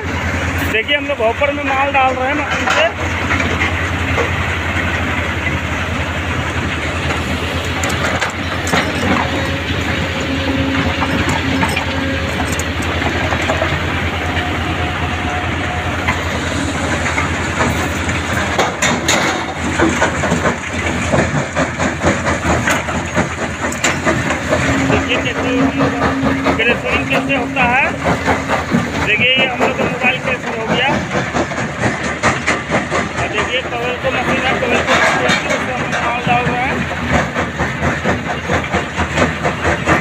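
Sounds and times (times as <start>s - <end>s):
heavy machinery engine drone: 0.0s - 40.0s
rattling knocks in stone crusher: 17.0s - 21.4s.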